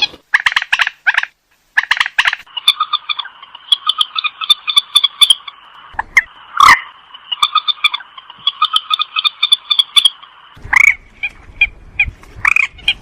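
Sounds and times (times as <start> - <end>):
rail bird harsh pulsed calls: 0.0 - 13.0.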